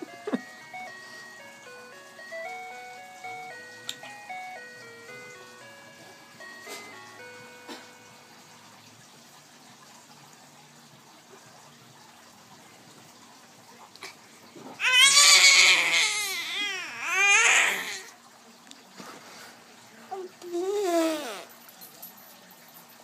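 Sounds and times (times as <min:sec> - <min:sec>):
baby vocalising high-pitched: 0:14.8 - 0:18.2, 0:20.2 - 0:21.5.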